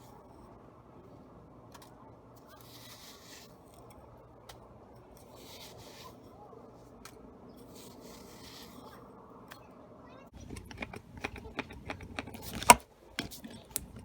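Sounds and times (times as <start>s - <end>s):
slime squishing by hand: 10.4s - 14.0s.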